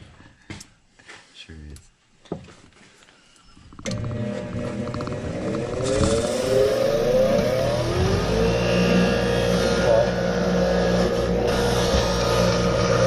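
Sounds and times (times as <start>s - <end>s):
motor spinning up and humming: 3.8s - 13.0s.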